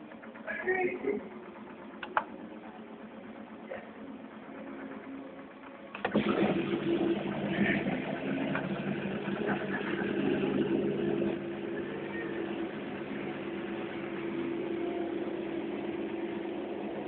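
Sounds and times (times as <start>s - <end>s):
dishwasher motor humming: 0.0s - 17.0s
dishwasher water rushing: 5.9s - 17.0s.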